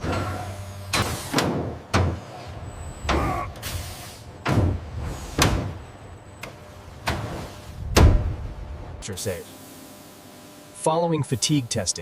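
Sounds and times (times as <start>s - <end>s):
hydraulic rig working: 0.0s - 12.0s
heavy thuds and slams: 4.4s - 5.9s, 7.0s - 8.6s.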